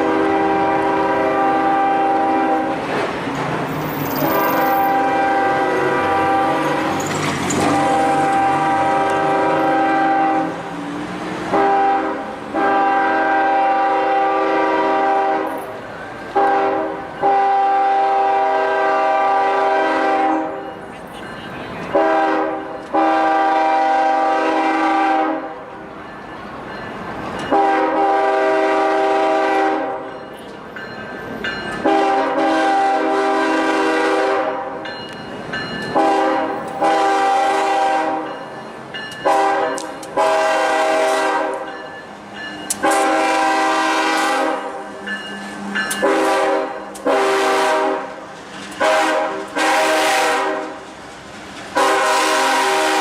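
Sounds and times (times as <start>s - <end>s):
locomotive air horn blasts: 0.0s - 2.8s, 3.9s - 7.0s, 7.6s - 10.7s, 11.5s - 15.6s, 16.3s - 20.6s, 21.9s - 25.6s, 27.5s - 30.1s, 31.8s - 34.8s, 35.9s - 38.3s, 39.2s - 41.7s, 42.8s - 44.8s, 45.9s - 48.2s, 48.8s - 50.8s, 51.7s - 53.0s.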